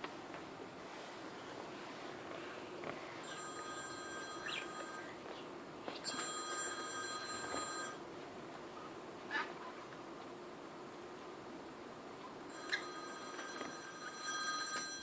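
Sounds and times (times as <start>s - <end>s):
telephone ringing: 3.2s - 5.3s, 6.0s - 8.0s, 12.5s - 15.0s.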